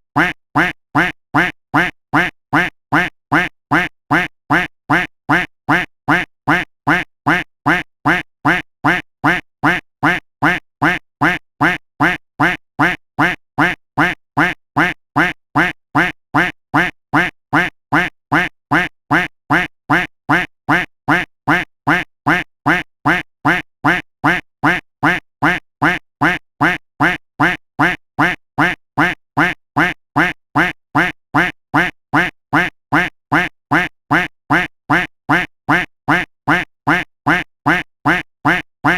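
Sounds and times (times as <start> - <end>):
duck quacking: 0.1 - 38.9.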